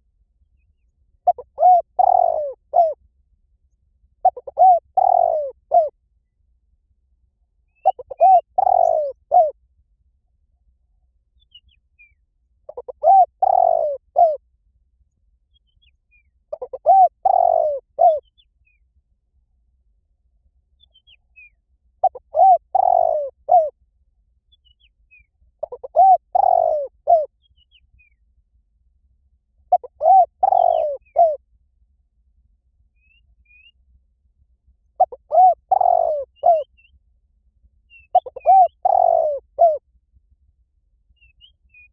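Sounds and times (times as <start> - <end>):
small birds chirping: 0.6 - 3.0, 4.2 - 5.9, 7.7 - 9.5, 11.4 - 14.4, 15.5 - 18.9, 20.8 - 23.7, 24.5 - 28.2, 29.7 - 31.4, 35.0 - 37.0, 37.9 - 39.8
dove cooing: 1.2 - 3.0, 4.2 - 5.9, 7.8 - 9.6, 12.7 - 14.4, 16.5 - 18.3, 22.0 - 23.7, 25.6 - 27.3, 29.7 - 31.4, 35.0 - 36.7, 38.1 - 39.8.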